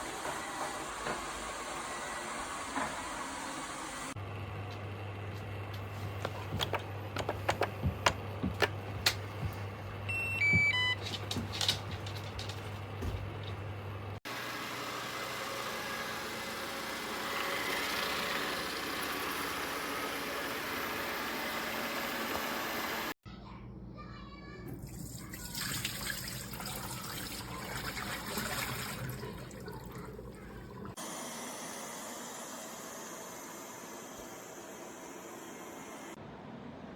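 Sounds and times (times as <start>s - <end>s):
low motor hum: 0.0s - 23.1s
robot vacuum beeping chime: 10.1s - 11.0s
water running and trickling: 24.8s - 31.0s.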